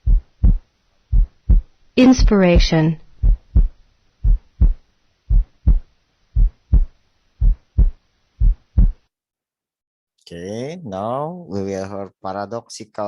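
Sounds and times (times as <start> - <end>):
heartbeat lub-dub: 0.0 - 9.1.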